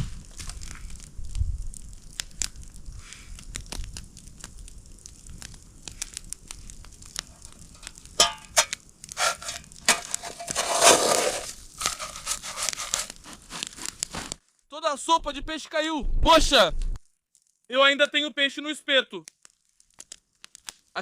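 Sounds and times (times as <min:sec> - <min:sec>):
rustling and crunching: 0:00.0 - 0:14.6, 0:19.3 - 0:21.0
crackles and clicks: 0:00.0 - 0:21.0.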